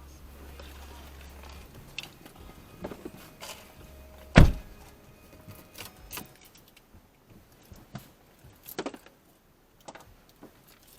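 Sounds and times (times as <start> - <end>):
faint clicks and rustles: 0.3 - 10.9
car door slamming: 1.3 - 6.4.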